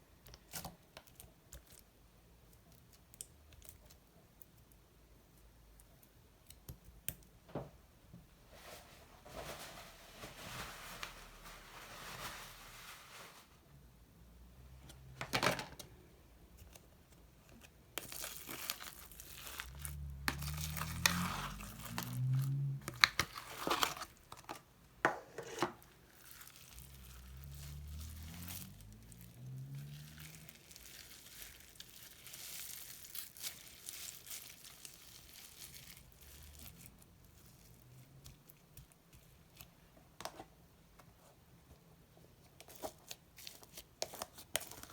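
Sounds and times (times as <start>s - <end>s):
slime kneaded by hand: 26.0s - 39.9s.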